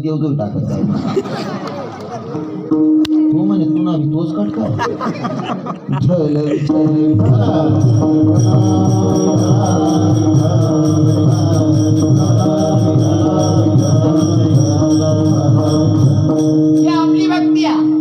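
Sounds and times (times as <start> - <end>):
people chanting: 5.1 - 16.2.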